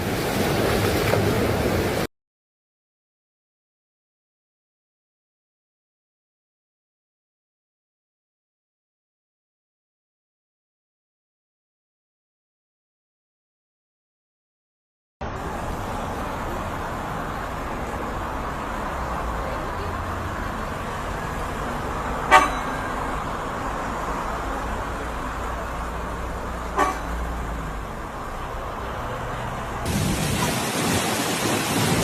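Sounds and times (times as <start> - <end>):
road traffic: 0.0 - 2.1, 15.2 - 32.0
car horn toots: 22.2 - 23.0, 26.7 - 27.2
loud rushing noise: 29.2 - 32.0.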